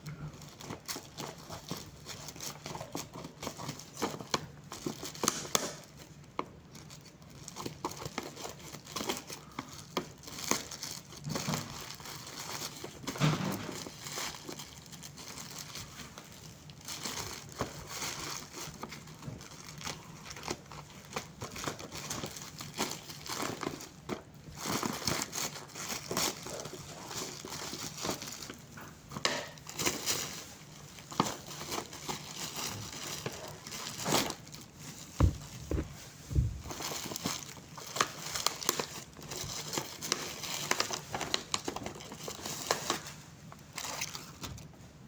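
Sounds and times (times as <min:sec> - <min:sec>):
packaging crinkling and rustling: 0:00.0 - 0:45.0
knocks: 0:35.2 - 0:36.6.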